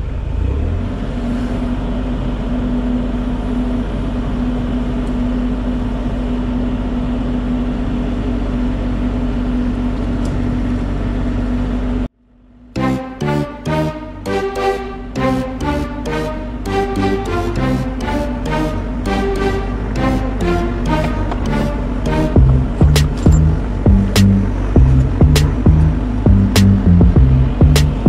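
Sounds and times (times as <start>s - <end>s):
diesel engine running: 12.8s - 28.0s.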